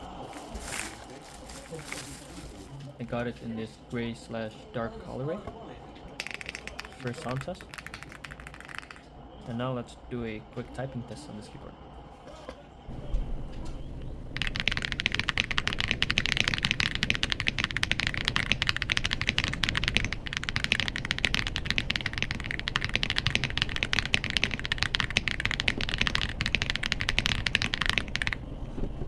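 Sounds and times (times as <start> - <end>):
mechanical keyboard typing: 6.2 - 9.0, 14.4 - 28.4.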